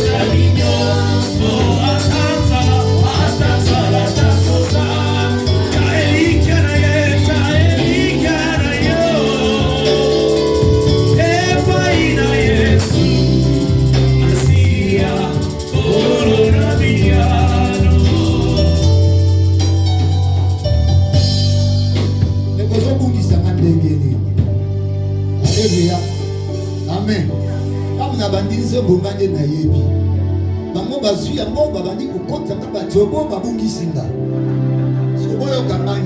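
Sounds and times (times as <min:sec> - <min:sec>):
gospel voices singing with band: 0:00.0 - 0:20.2
strong bass line: 0:00.0 - 0:30.4.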